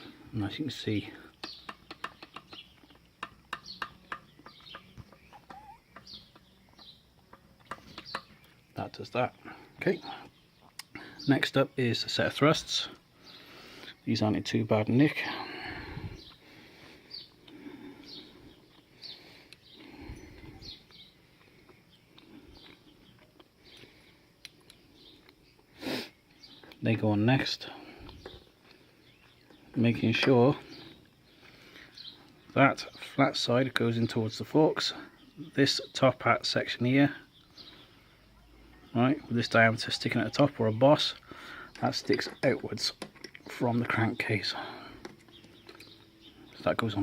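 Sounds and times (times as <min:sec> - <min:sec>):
birds calling: 0:00.0 - 0:47.0
metallic clicks of engine parts: 0:01.4 - 0:08.6, 0:45.0 - 0:46.1.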